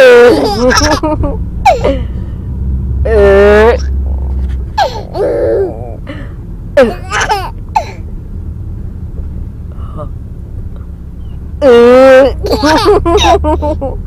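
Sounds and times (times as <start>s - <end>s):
car interior rumble: 0.0s - 14.0s
baby giggling and squealing: 4.8s - 6.0s.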